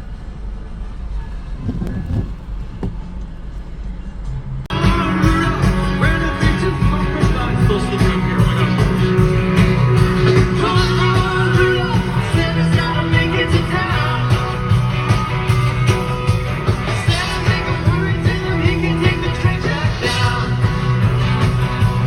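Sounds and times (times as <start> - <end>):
rock and roll music: 4.7 - 22.0.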